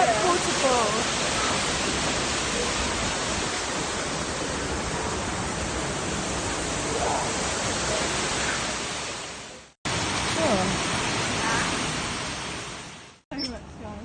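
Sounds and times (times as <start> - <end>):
waterfall rushing: 0.0 - 13.2.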